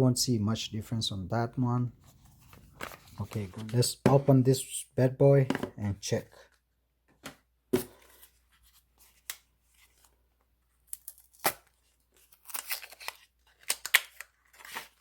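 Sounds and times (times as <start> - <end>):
packaging tearing and rustling: 10.9 - 15.0.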